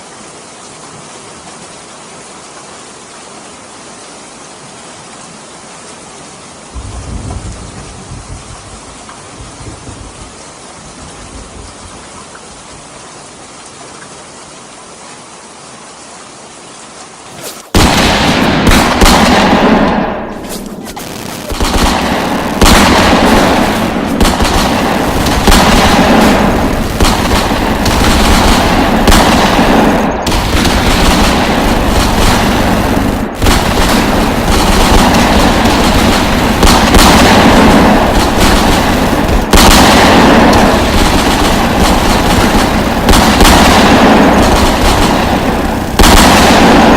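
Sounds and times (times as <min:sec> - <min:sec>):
steady rain: 0:00.0 - 0:46.9
machine-gun bursts: 0:17.7 - 0:46.9.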